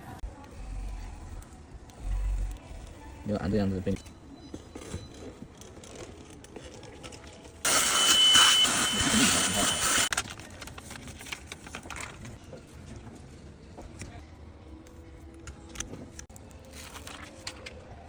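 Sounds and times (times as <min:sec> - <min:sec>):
thin high whine: 0:07.6 - 0:10.1
air tool hissing rush: 0:07.7 - 0:10.1.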